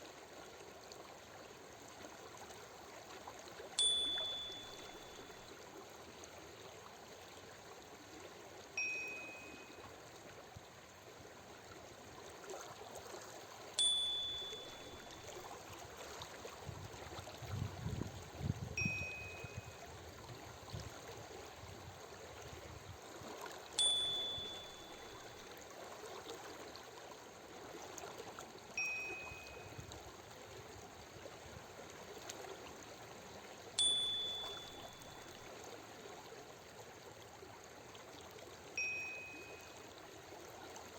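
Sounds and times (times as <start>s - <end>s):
stream water flowing: 0.0s - 40.9s
soft two-tone chime: 3.8s - 5.6s, 8.8s - 10.0s, 13.8s - 15.7s, 18.8s - 19.9s, 23.8s - 25.6s, 28.8s - 30.0s, 33.8s - 35.7s, 38.8s - 40.0s.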